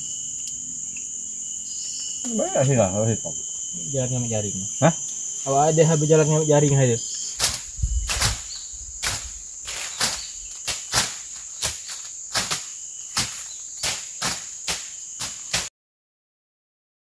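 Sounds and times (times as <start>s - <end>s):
insects chirring: 0.0s - 15.7s
sharp thuds: 7.4s - 15.7s.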